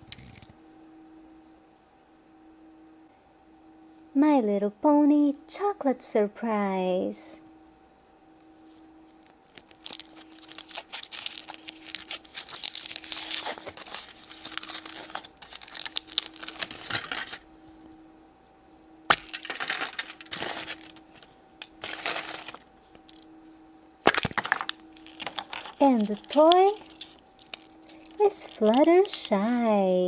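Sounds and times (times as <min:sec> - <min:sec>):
foil wrapper crinkling: 0:09.0 - 0:17.8, 0:19.1 - 0:23.4, 0:24.0 - 0:30.0.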